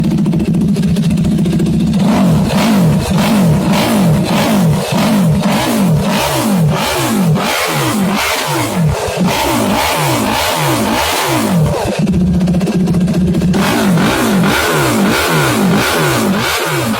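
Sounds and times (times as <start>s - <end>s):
motorcycle engine revving: 0.0s - 16.9s.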